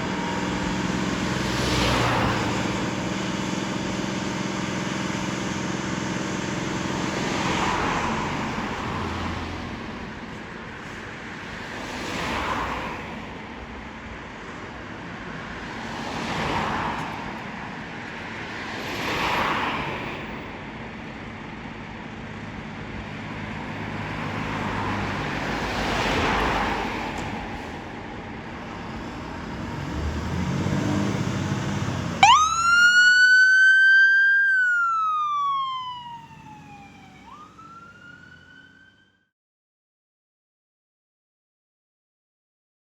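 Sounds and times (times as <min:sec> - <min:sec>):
diesel engine running: 0:00.0 - 0:11.1
siren wailing: 0:32.2 - 0:39.2.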